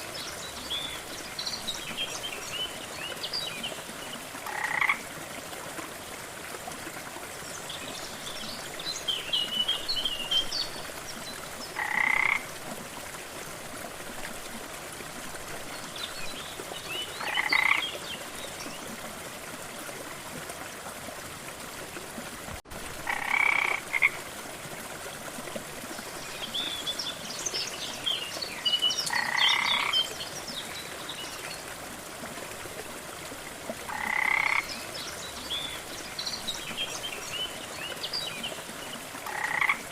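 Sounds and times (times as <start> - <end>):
frog croaking: 4.4 - 5.0, 11.8 - 12.4, 17.2 - 17.8, 23.1 - 24.2, 29.1 - 29.9, 33.9 - 34.6, 39.3 - 39.8.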